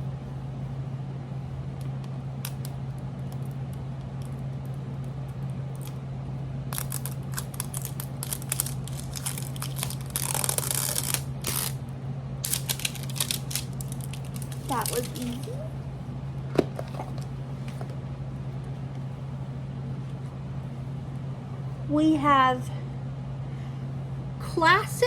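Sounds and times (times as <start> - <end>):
steady low hum: 0.0 - 25.0
plastic tearing rustle: 6.7 - 11.8, 12.4 - 15.7
plastic wrapping crinkling: 6.7 - 11.8, 12.4 - 15.7.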